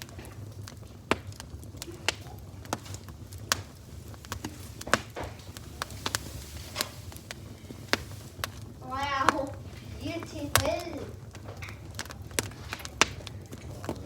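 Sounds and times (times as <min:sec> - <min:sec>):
sharp clicks and taps: 0:10.5 - 0:13.2.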